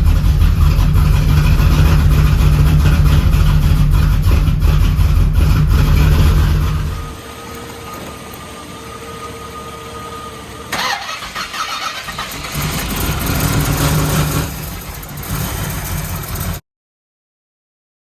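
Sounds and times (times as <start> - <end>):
engine running with low rumble: 0.0 - 16.6
engine cranking: 10.7 - 16.6.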